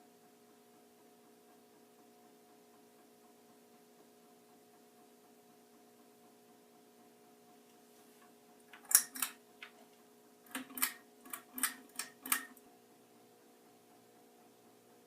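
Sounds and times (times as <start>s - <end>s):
ceiling fan motor hum: 0.0s - 15.0s
sharp clicks: 10.5s - 12.6s.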